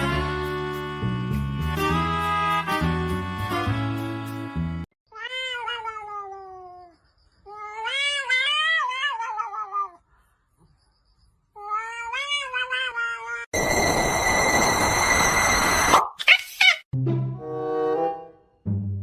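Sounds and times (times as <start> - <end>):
cat meowing: 5.1 - 10.0, 11.6 - 13.5.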